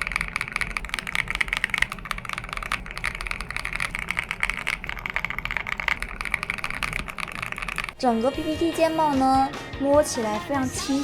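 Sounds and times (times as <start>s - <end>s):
mechanical keyboard typing: 0.0s - 9.1s.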